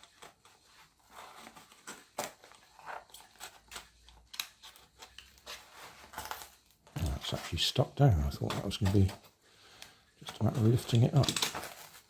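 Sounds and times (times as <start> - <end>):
package handling clicks and rustles: 8.4 - 12.0.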